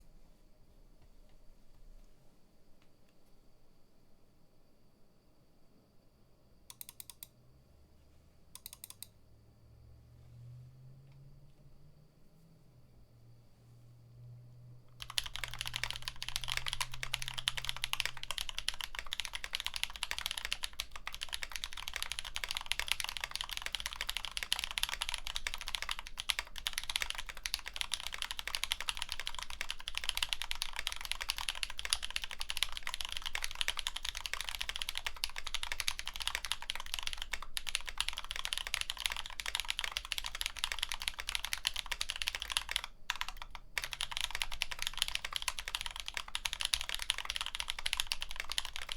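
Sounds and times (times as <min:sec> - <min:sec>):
mechanical keyboard typing: 0:06.7 - 0:07.3, 0:08.6 - 0:09.1, 0:14.9 - 0:48.9.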